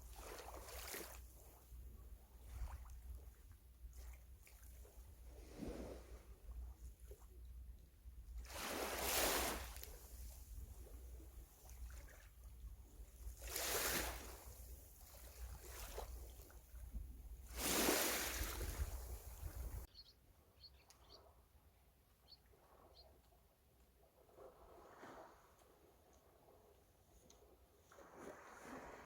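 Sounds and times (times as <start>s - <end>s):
sea waves washing in: 5.3s - 6.3s, 8.4s - 10.4s, 13.4s - 16.2s, 17.5s - 19.9s.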